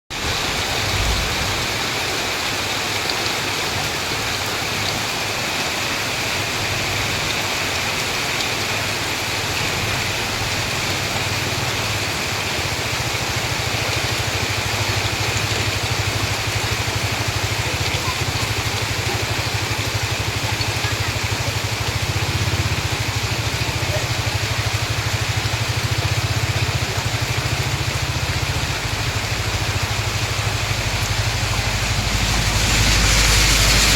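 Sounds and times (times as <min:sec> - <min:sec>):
rain falling steadily: 0:00.1 - 0:33.9
low rumble: 0:24.7 - 0:33.9.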